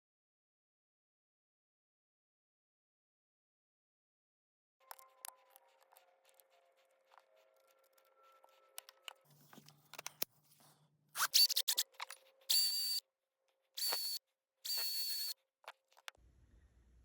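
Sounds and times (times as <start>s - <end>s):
belt sander tool whining: 12.5s - 13.0s, 13.8s - 15.4s
sharp clicks: 13.8s - 16.2s.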